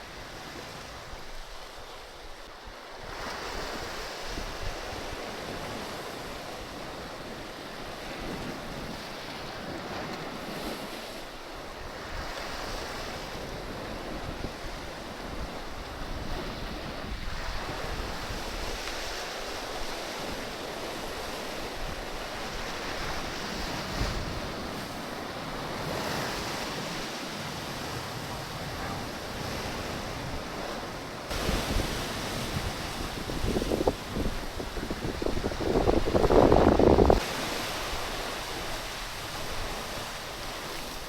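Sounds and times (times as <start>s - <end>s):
sea surf washing in: 0.0s - 41.0s
wind buffeting microphone: 11.6s - 41.0s.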